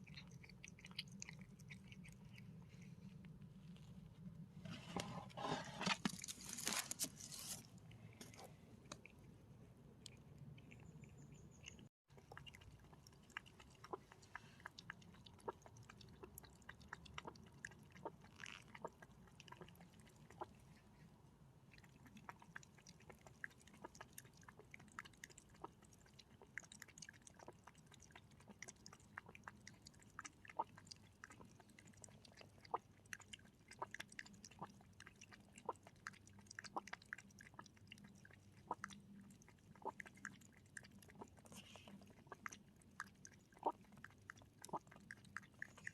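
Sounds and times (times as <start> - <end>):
animal crunching dry food: 5.0 - 9.3.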